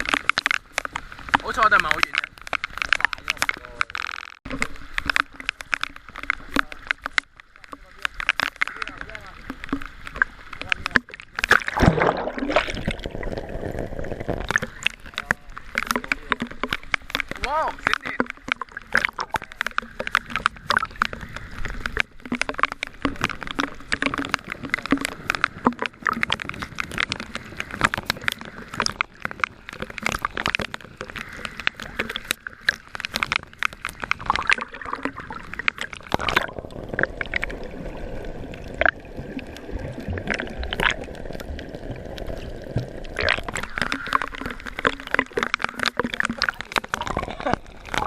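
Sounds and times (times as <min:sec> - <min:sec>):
sea water sloshing and splashing: 0:00.0 - 0:48.0.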